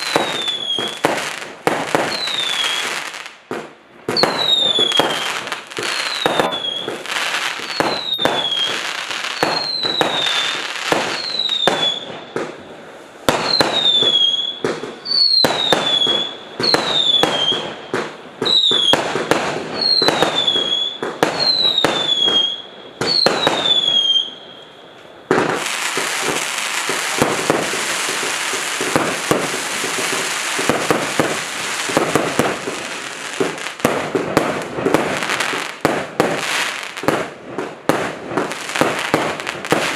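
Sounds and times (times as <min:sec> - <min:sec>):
falling firework whistle: 0:00.0 - 0:03.2, 0:04.1 - 0:39.9
firework launch pops: 0:00.0 - 0:12.6, 0:25.3 - 0:39.9
firework crackling: 0:00.0 - 0:39.9.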